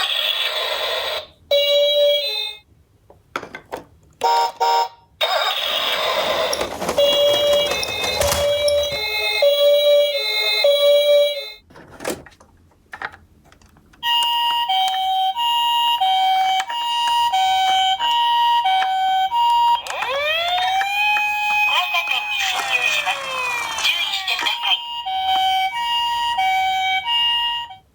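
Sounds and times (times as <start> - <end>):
two-tone ambulance siren: 14.0 - 23.9, 24.8 - 27.9
rising wailing siren: 16.0 - 22.2, 23.0 - 23.9.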